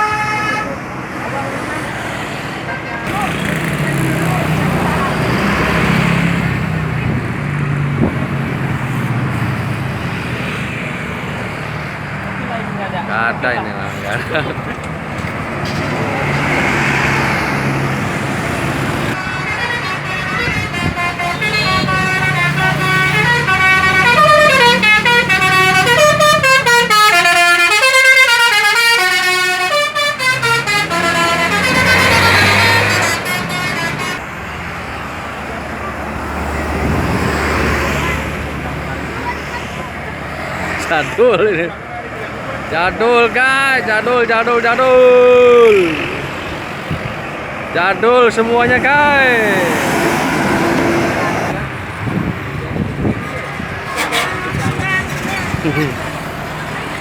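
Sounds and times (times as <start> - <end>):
air horn melody: 0.0 - 0.8, 19.2 - 34.2, 53.8 - 54.8
large vehicle engine humming: 0.0 - 57.0
road traffic: 0.0 - 57.0
rushing noise: 46.2 - 57.0.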